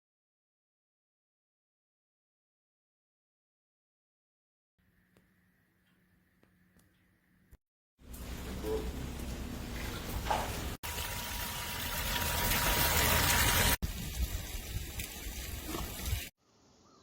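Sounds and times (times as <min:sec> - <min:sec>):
fountain water splashing and gushing: 0:10.8 - 0:16.3.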